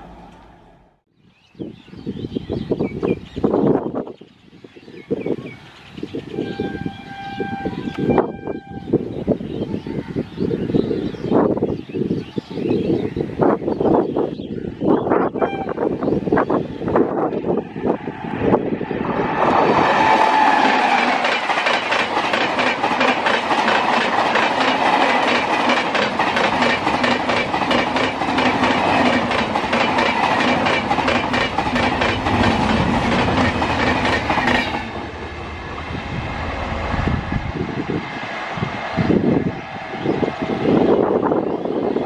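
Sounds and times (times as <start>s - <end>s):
low train rumble: 0.0s - 1.1s, 14.6s - 42.0s
train wheels clattering over rail joints: 20.6s - 35.0s.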